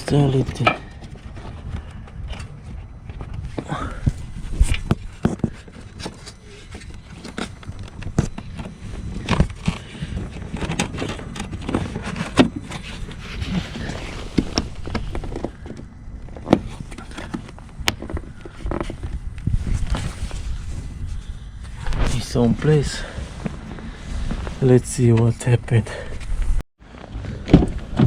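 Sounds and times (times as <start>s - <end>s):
steady low rumble: 0.0s - 26.6s
plastic clicks knocks and scrapes: 4.6s - 13.2s.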